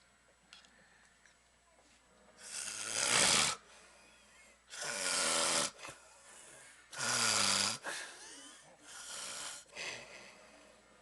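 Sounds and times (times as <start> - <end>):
man snoring loudly: 2.4 - 3.6, 4.7 - 5.8, 6.9 - 7.8, 9.0 - 9.7.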